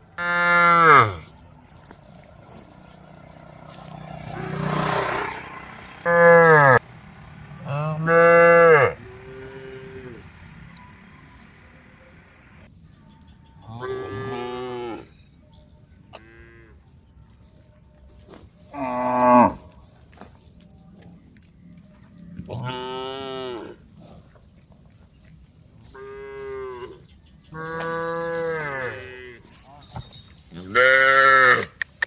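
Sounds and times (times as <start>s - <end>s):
cows mooing: 0.1s - 1.3s, 2.5s - 10.6s, 13.7s - 15.1s, 18.7s - 19.8s, 22.4s - 23.9s, 25.9s - 30.0s, 30.6s - 31.8s.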